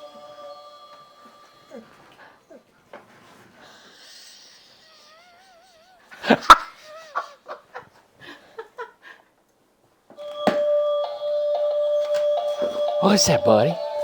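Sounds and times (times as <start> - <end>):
dog whining: 1.2 - 2.8.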